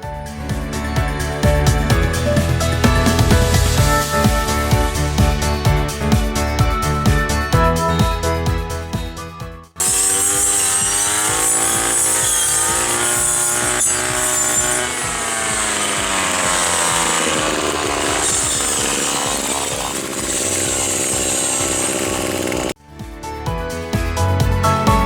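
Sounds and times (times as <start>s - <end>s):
small two-stroke engine running: 9.8s - 22.8s.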